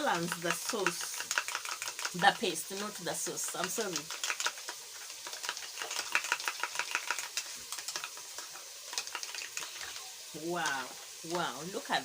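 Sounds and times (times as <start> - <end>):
onions and tomatoes sizzling in oil: 0.0 - 12.0.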